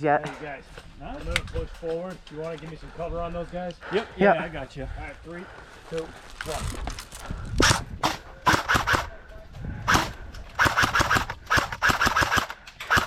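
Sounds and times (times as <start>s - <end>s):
airsoft guns firing: 7.6s - 9.1s, 9.9s - 13.0s.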